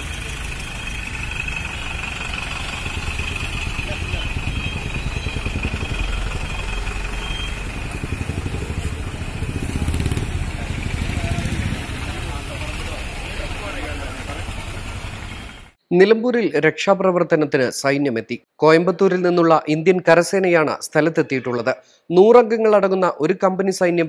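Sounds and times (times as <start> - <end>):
vehicle engine idling: 0.0 - 15.8
people talking: 3.7 - 6.1, 8.0 - 14.8.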